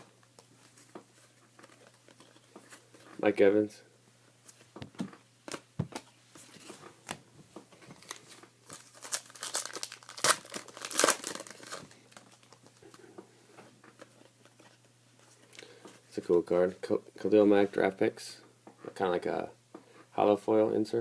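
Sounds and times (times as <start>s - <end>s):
foil wrapper crinkling and tearing: 8.0s - 12.8s.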